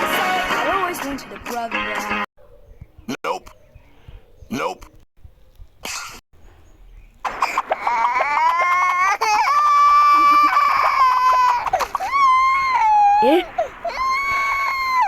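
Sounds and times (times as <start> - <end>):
baby crying: 7.3 - 15.0.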